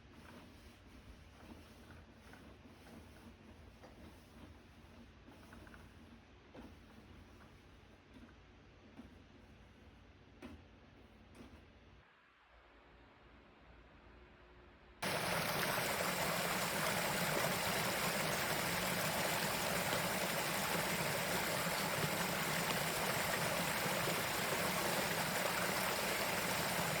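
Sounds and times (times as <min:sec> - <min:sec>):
stream rushing over rocks: 0:15.0 - 0:27.0.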